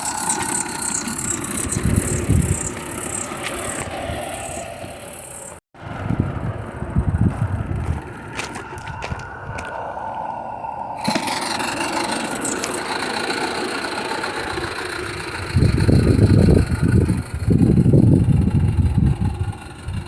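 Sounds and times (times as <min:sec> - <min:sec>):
locomotive wheels rattling: 0:00.0 - 0:20.0
steam hissing: 0:09.8 - 0:20.0.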